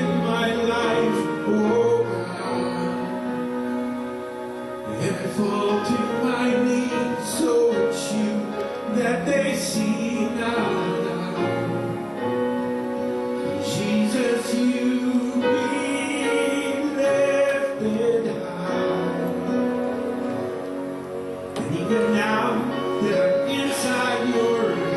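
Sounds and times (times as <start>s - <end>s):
sustained instrumental chords: 0.0s - 24.9s
people singing: 13.6s - 19.5s, 21.6s - 24.9s.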